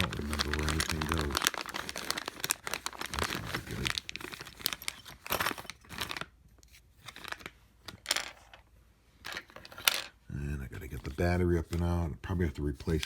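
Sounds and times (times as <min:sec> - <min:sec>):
plastic film crinkling and tearing: 0:00.0 - 0:07.6.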